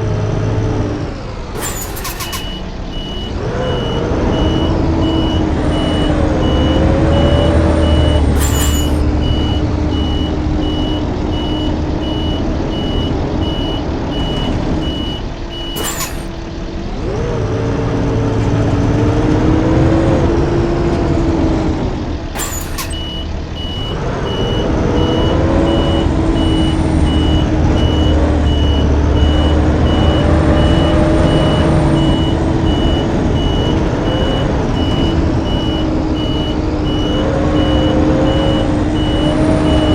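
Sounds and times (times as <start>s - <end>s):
diesel bus engine running: 0.0s - 39.9s
short sharp clicks: 1.6s - 3.3s, 8.4s - 9.1s, 14.2s - 16.4s, 22.4s - 24.0s.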